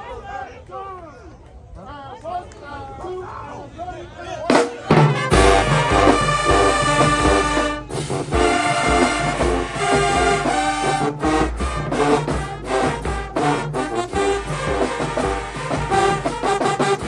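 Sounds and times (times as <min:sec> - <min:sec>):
brass horns: 0:04.5 - 0:17.0
heavy low drum beat: 0:04.9 - 0:17.0.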